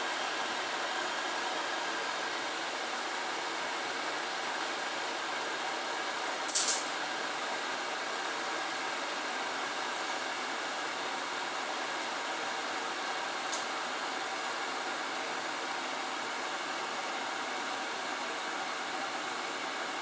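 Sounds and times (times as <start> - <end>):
sharp high hiss: 6.5 - 6.9.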